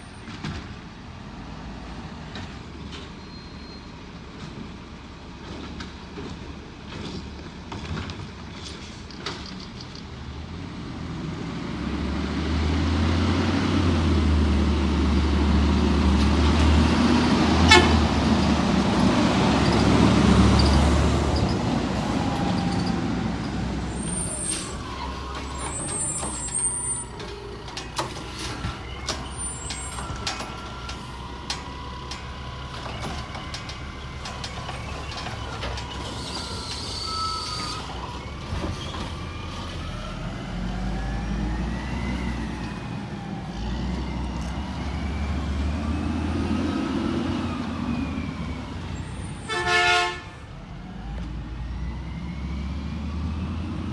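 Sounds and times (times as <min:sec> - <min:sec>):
garbage truck diesel engine: 0:00.0 - 0:53.9.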